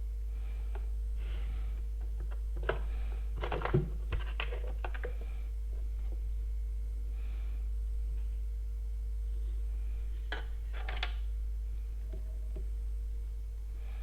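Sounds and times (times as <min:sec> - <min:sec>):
low hum: 0:00.0 - 0:14.0.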